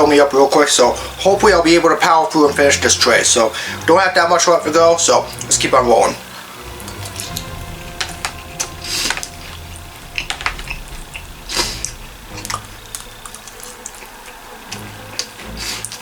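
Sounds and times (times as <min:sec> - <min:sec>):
short hissing rushes: 0:06.1 - 0:16.0.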